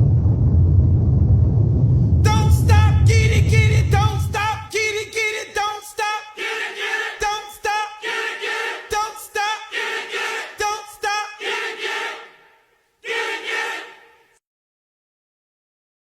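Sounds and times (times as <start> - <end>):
deep bass: 0.0 - 4.6
high voice singing: 2.2 - 12.4.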